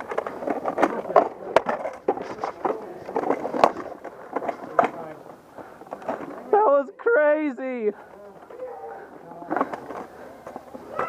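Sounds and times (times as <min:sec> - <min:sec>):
rustling movement: 0:00.0 - 0:06.7, 0:07.9 - 0:11.0.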